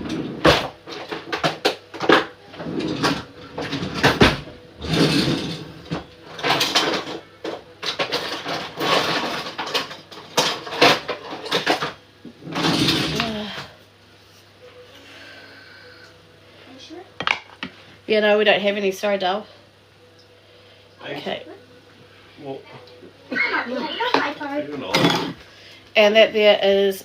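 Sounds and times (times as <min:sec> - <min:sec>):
dishes and containers clattering: 0:00.0 - 0:13.7, 0:23.4 - 0:25.4.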